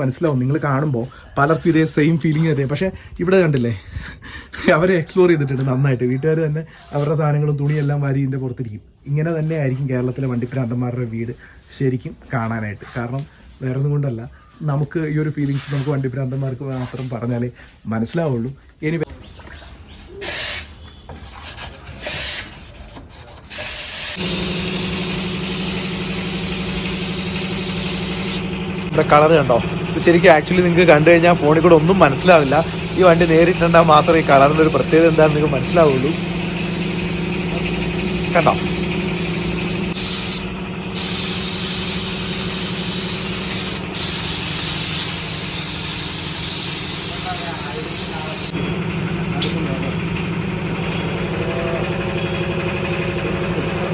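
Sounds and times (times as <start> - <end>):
paint spray gun hissing: 20.2 - 20.8, 22.0 - 22.6, 23.5 - 48.6
motor hum: 20.2 - 53.9.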